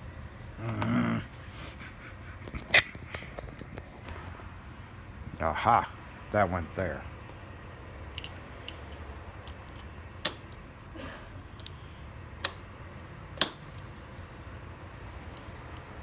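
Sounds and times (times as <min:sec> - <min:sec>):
lock parts clicking: 0:08.1 - 0:10.7, 0:11.5 - 0:11.8, 0:12.4 - 0:12.7, 0:13.4 - 0:13.9.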